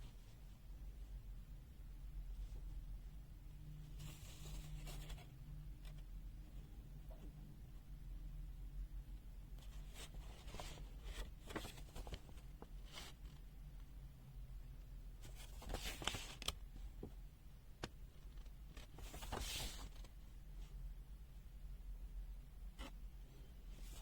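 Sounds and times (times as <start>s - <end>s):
low steady hum: 0.0s - 24.0s
soft rustles: 9.6s - 13.4s, 15.2s - 17.2s, 18.3s - 20.8s, 23.7s - 24.0s.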